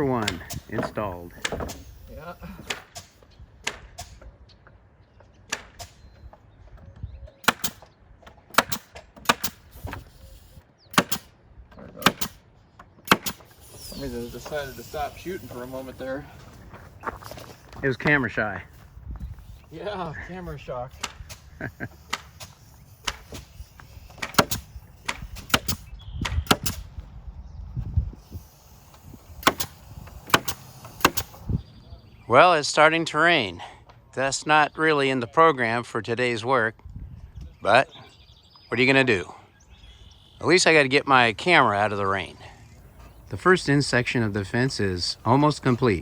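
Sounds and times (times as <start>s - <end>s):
nails hammered into wood: 0.2s - 1.8s, 7.4s - 7.9s, 8.5s - 10.0s, 10.9s - 11.3s, 12.0s - 12.4s, 13.0s - 13.5s, 24.2s - 26.8s, 29.4s - 31.4s.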